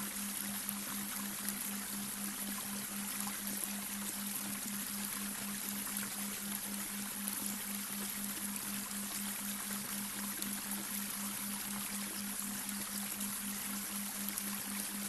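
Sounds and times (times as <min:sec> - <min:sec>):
pulsing low hum tone: 0:00.0 - 0:15.0.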